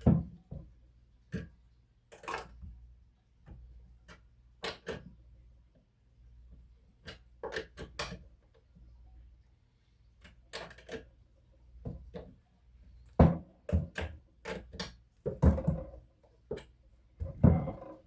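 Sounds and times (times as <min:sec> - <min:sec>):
knocks and clunks of hand tools: 0:13.2 - 0:18.0.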